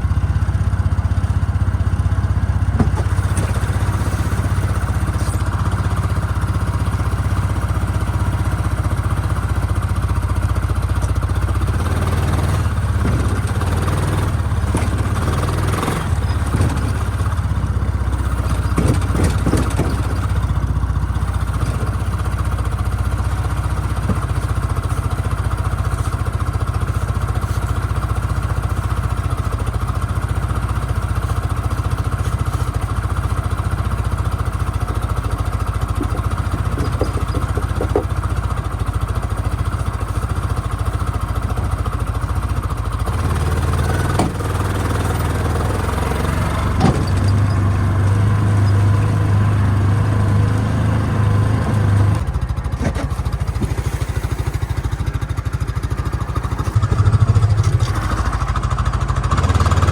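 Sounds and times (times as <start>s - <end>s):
engine humming: 0.0s - 59.9s
clattering and knocks: 2.8s - 6.1s, 11.0s - 29.6s, 31.2s - 38.8s, 43.2s - 49.1s, 52.2s - 55.2s, 56.0s - 58.6s.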